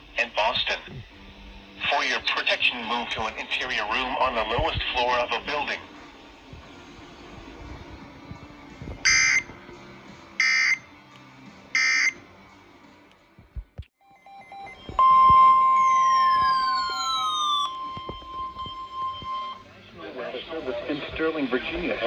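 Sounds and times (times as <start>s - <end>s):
steady alarm tone: 9.0s - 9.5s, 10.4s - 10.8s, 11.8s - 12.2s, 14.2s - 19.7s
data tone bursts: 9.1s - 9.5s, 10.4s - 10.8s, 11.8s - 12.2s, 14.6s - 19.6s
tones sliding downward: 14.8s - 19.6s.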